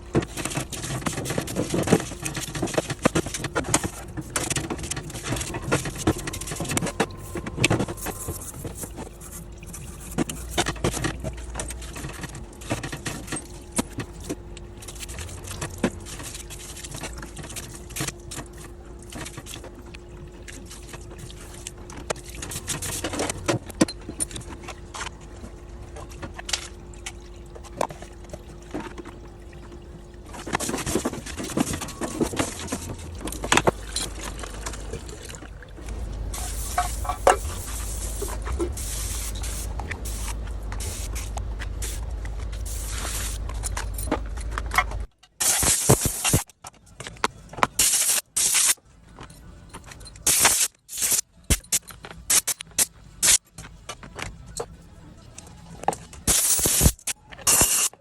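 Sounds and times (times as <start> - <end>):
faint steady hum: 0.0 - 58.0
metal parts and tools clinking: 56.3 - 58.0.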